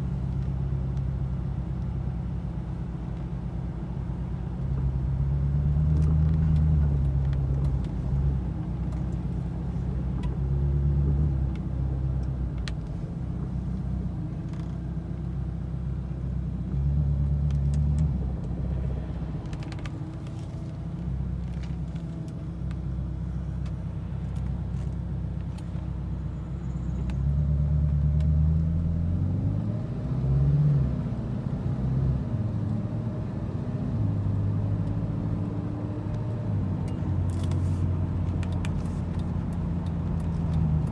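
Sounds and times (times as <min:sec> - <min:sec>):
car engine running at low revs: 0:00.0 - 0:40.9.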